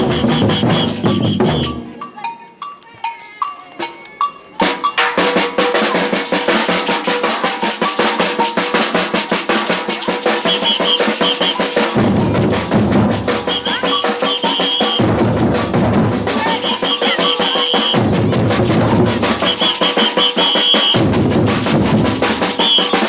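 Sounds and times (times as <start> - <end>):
samba percussion band drumming: 0.0 - 2.3, 4.6 - 23.0
short high whistle blasts: 0.4 - 1.8, 10.4 - 11.8, 13.5 - 15.1, 19.4 - 21.0, 22.6 - 23.0.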